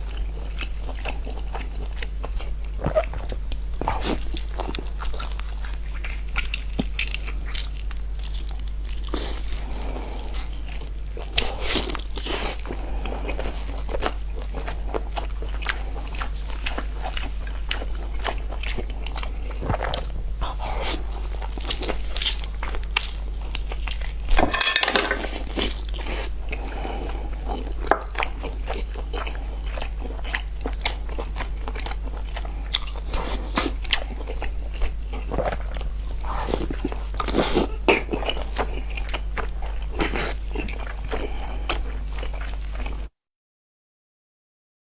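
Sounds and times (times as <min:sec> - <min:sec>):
steady low hum: 0:00.0 - 0:43.1
person crunching and chewing: 0:00.1 - 0:43.0.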